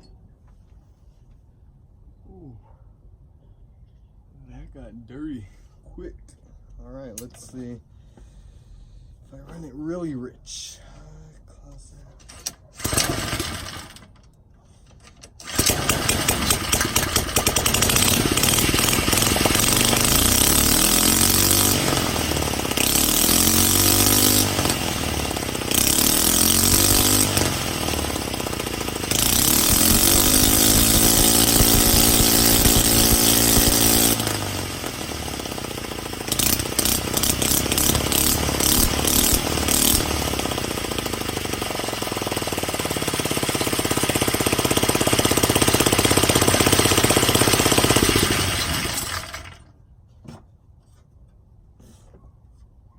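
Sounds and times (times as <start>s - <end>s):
small engine revving: 12.8s - 14.1s, 15.4s - 49.6s.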